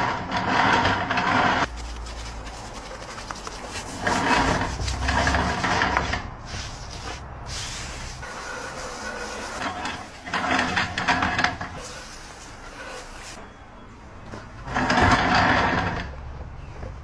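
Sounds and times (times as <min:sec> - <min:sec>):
scraping on tyre rubber: 0:00.3 - 0:13.6.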